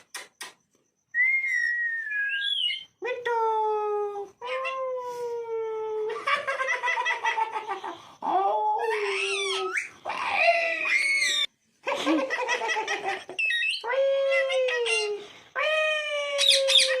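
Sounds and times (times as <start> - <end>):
parrot calling and squawking: 2.3 - 2.9, 13.4 - 13.9, 16.4 - 17.0.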